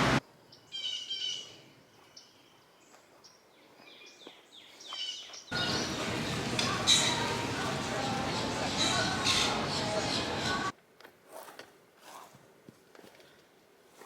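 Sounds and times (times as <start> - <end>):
loud steady noise: 0.0 - 0.2, 5.6 - 10.7
birds chirping: 0.0 - 10.7.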